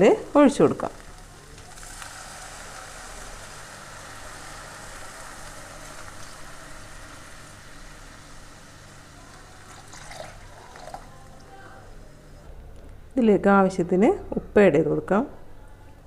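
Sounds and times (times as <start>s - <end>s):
food sizzling in a pan: 0.0s - 12.2s.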